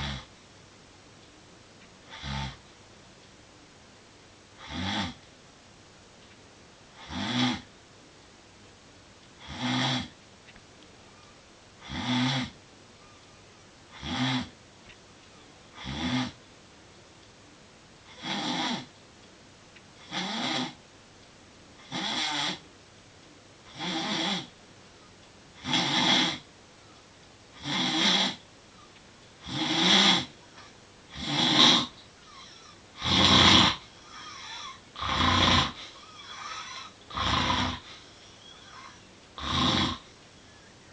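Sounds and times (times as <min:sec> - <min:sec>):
rasping snoring: 0:00.0 - 0:00.3, 0:02.1 - 0:02.6, 0:04.6 - 0:05.2, 0:07.0 - 0:07.7, 0:09.4 - 0:10.1, 0:11.8 - 0:12.6, 0:13.9 - 0:14.5, 0:15.8 - 0:16.4, 0:18.1 - 0:18.9, 0:20.0 - 0:20.8, 0:21.8 - 0:22.6, 0:23.7 - 0:24.5, 0:25.6 - 0:26.4, 0:27.6 - 0:28.4, 0:29.4 - 0:30.3, 0:31.1 - 0:40.1.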